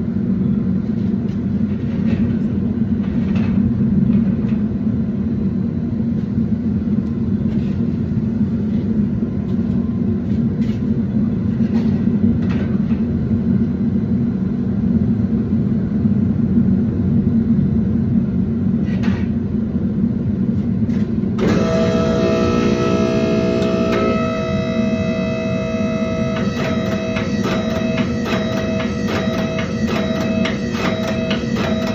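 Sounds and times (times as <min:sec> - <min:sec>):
machinery rumbling roar: 0:21.4 - 0:31.3.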